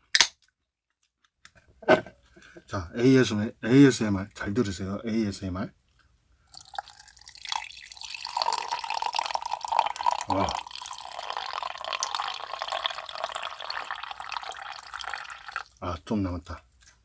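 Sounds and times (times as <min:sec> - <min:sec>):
carbonated drink fizzing: 0:06.6 - 0:15.8.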